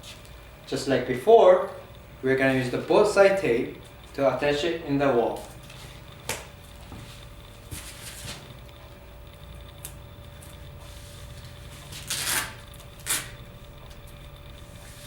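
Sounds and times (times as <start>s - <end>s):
faint steady hum: 0.0s - 15.0s
tape rustling and rasping: 9.8s - 15.0s.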